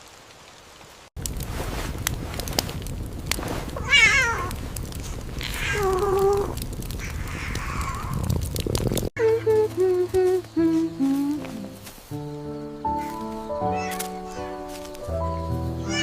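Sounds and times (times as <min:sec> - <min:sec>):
background hiss: 0:09.2 - 0:16.0
music: 0:09.2 - 0:16.0
cat meowing: 0:13.7 - 0:14.6, 0:15.8 - 0:16.0.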